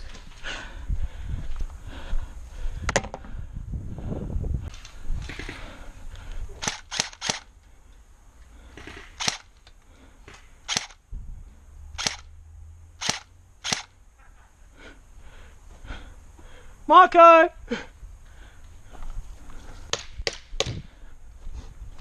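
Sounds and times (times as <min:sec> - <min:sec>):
airsoft gun shots: 0:06.6 - 0:07.5, 0:08.8 - 0:09.5, 0:10.7 - 0:11.0, 0:12.0 - 0:12.3, 0:13.0 - 0:13.9.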